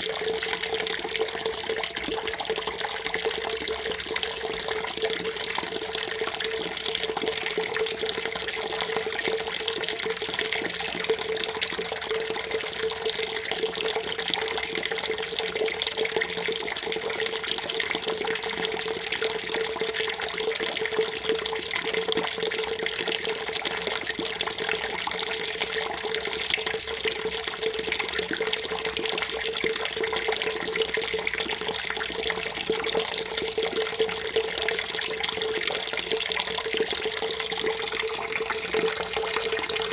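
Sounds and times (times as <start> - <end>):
water running and splashing: 35.8 - 39.9.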